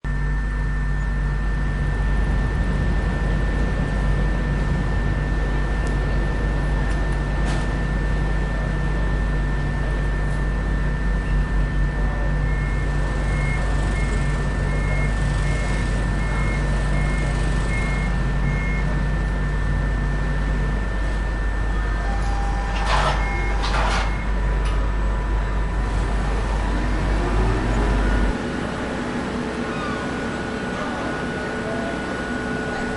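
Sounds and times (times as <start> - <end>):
heavy machinery engine drone: 0.0 - 32.9
reversing alarm beeps: 8.9 - 24.6.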